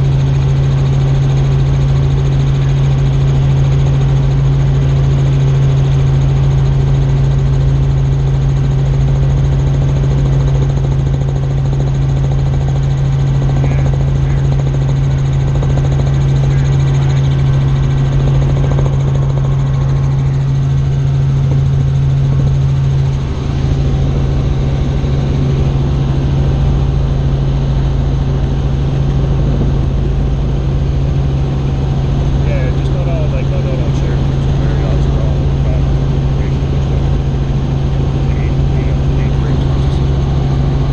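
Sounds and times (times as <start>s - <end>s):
helicopter rotor and engine drone: 0.0s - 40.9s.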